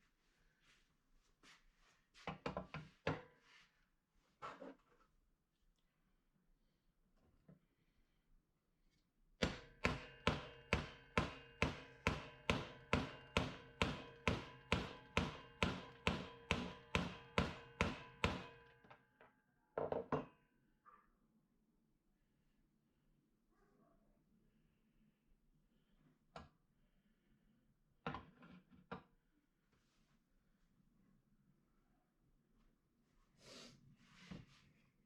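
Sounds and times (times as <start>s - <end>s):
hammer striking metal: 9.4s - 18.7s.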